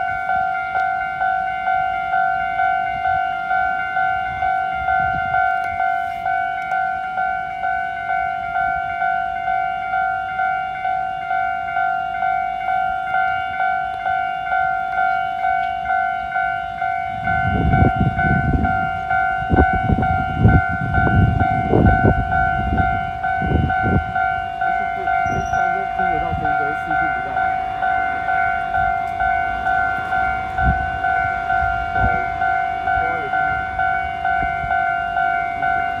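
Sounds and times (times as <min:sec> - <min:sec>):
level-crossing warning bell: 0:00.0 - 0:36.0
train rumble and wheel knocks: 0:12.9 - 0:36.0.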